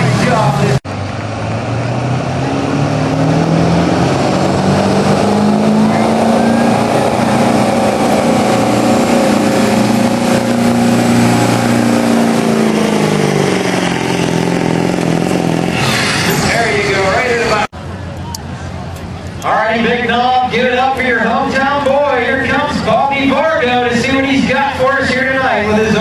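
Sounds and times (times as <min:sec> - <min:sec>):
pickup truck engine at full throttle: 0:00.0 - 0:26.0.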